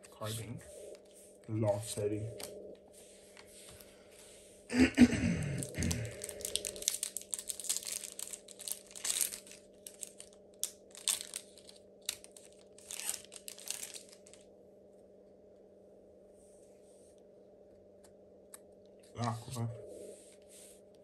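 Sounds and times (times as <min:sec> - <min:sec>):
foil wrapper tearing and crinkling: 0:05.6 - 0:14.4.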